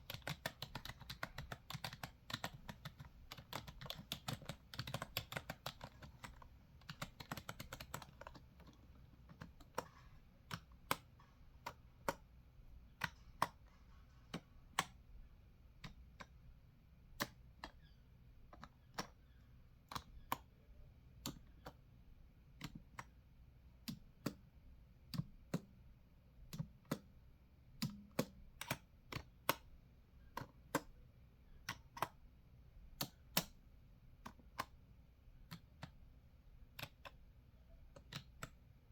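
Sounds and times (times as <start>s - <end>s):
computer keyboard typing: 0.0s - 12.3s, 13.0s - 15.0s, 36.8s - 37.2s, 37.9s - 38.6s.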